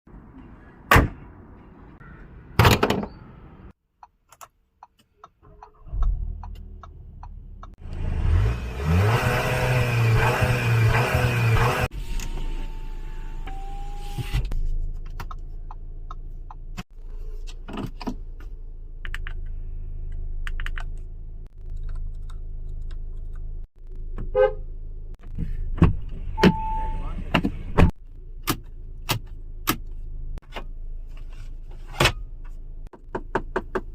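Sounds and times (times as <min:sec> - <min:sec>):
car engine starting and revving: 0:05.7 - 0:14.5.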